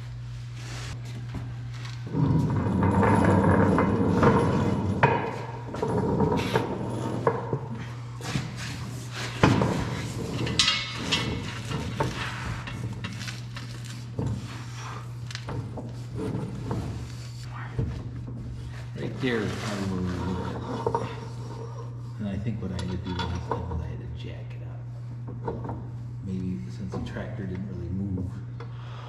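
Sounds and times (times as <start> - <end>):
steady low hum: 0.0 - 29.0
metal tools knocking and clanking: 10.4 - 13.2, 22.7 - 23.8.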